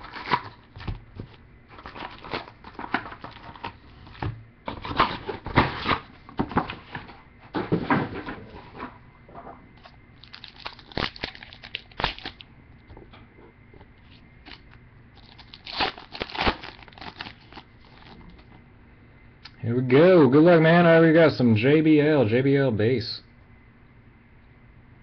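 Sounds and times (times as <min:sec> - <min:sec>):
wrappers tearing and crinkling: 0:00.0 - 0:00.9, 0:01.7 - 0:04.2, 0:10.2 - 0:12.4, 0:14.4 - 0:18.3.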